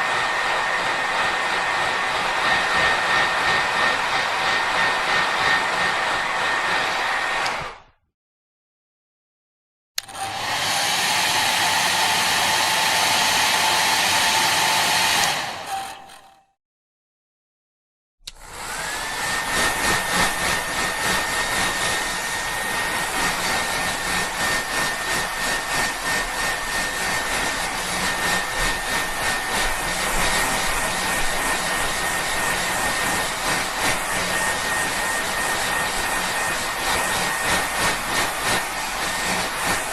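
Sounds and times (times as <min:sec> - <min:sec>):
hair dryer blowing: 0:00.0 - 0:08.0, 0:10.0 - 0:16.4, 0:18.3 - 0:39.9
hair dryer switch click: 0:10.0 - 0:10.3, 0:15.1 - 0:16.0.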